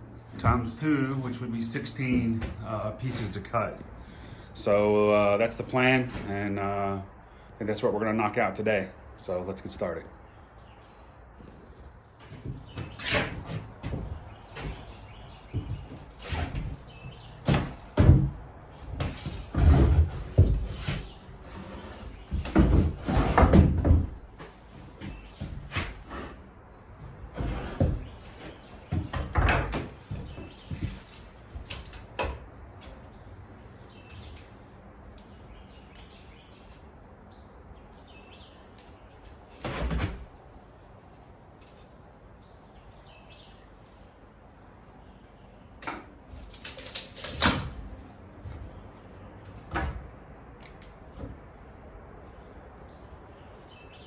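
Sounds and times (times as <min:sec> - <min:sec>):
wooden knocks and thumps: 0:12.2 - 0:26.4, 0:27.0 - 0:32.4.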